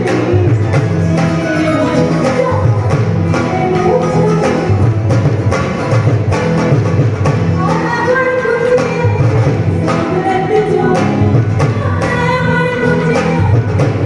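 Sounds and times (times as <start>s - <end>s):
loud music with singing: 0.0s - 14.0s.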